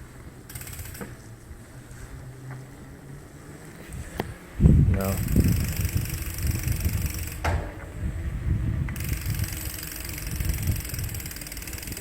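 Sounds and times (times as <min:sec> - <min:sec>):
bike low rumble: 0:00.0 - 0:12.0
mechanical rattling: 0:00.5 - 0:01.2, 0:04.9 - 0:08.0, 0:08.9 - 0:12.0.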